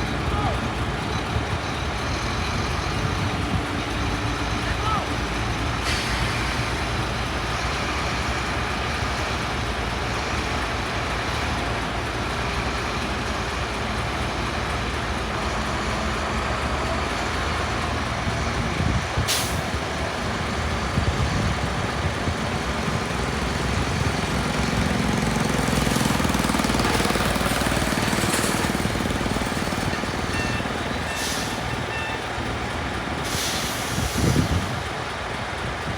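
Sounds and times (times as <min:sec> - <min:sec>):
heavy trucks engine noise: 0:00.0 - 0:35.9
short sharp hisses: 0:33.2 - 0:34.7.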